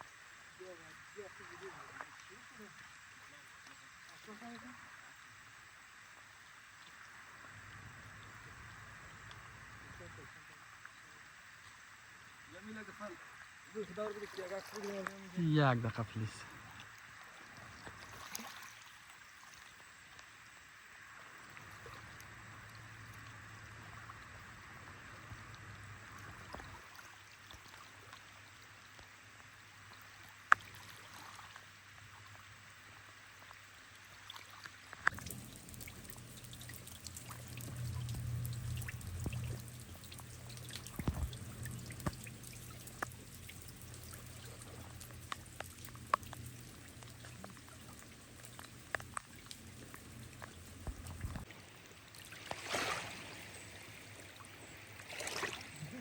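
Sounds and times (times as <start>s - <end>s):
water trickling: 0.0s - 56.0s
steady rain: 12.4s - 16.6s, 35.0s - 51.5s
raindrops ticking: 35.0s - 51.5s.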